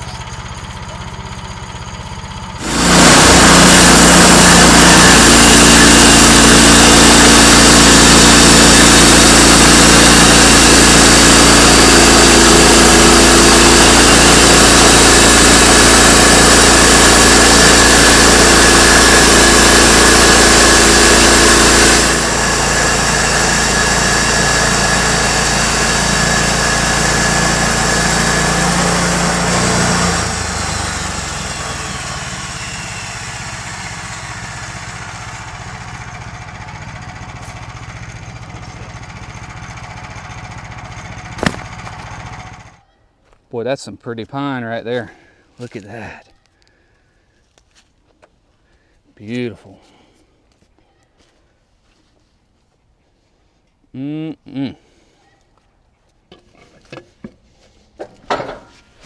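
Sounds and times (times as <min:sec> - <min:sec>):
gas engine running: 0:00.0 - 0:42.8.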